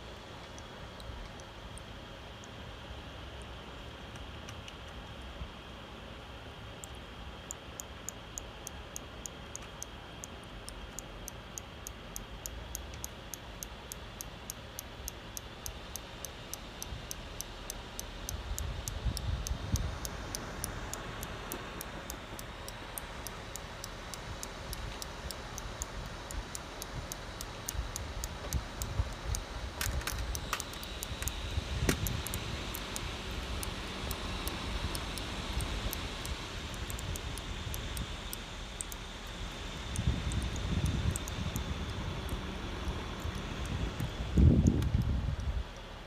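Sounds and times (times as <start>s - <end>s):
laptop fan whine: 0.0s - 46.0s
regular ticking: 0.0s - 46.0s.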